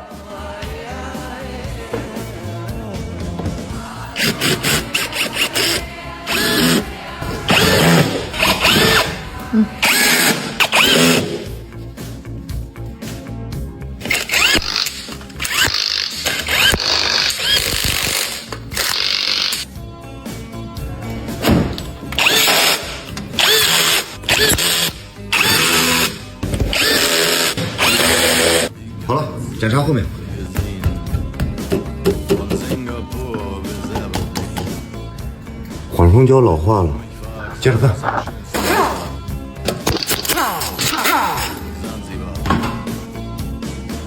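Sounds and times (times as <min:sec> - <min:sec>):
power tool whining: 0:04.1 - 0:11.6, 0:14.0 - 0:19.7, 0:21.5 - 0:28.7.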